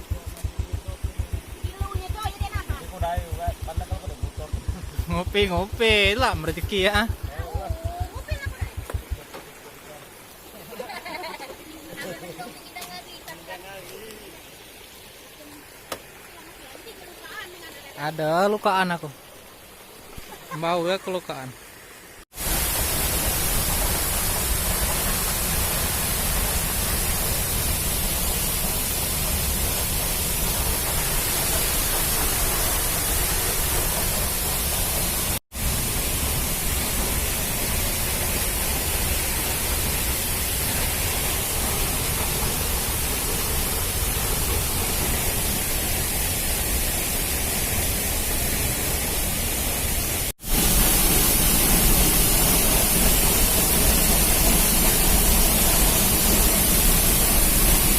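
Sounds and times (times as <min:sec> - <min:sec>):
waterfall roaring: 0:00.0 - 0:57.9.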